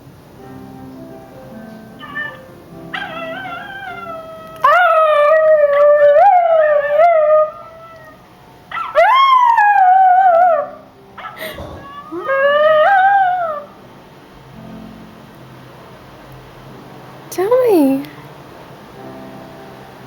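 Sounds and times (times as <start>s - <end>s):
dog howling: 2.0s - 13.8s.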